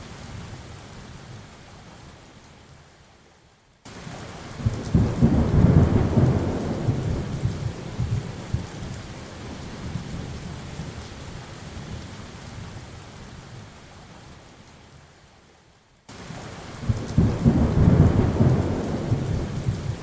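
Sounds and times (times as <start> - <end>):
steady rain: 0.0 - 20.0
thunder rumbling: 4.6 - 8.9, 16.8 - 20.0.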